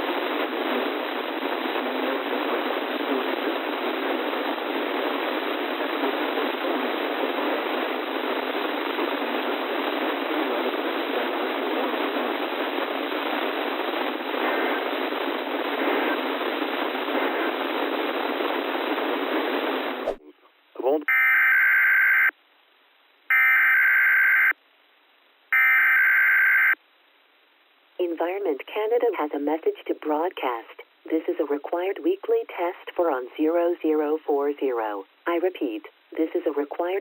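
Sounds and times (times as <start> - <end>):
radio static hiss: 0.0 - 21.2.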